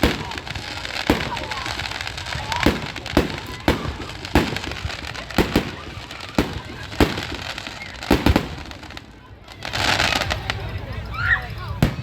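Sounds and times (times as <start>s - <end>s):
fireworks bursting: 0.0s - 12.0s
steady background noise: 0.0s - 12.0s.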